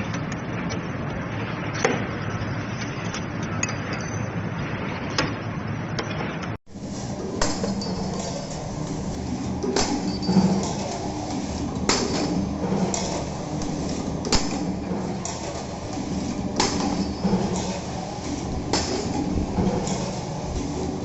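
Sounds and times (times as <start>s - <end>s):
machine motor hum: 6.7s - 21.0s
metallic clanks and clinks: 7.2s - 18.1s.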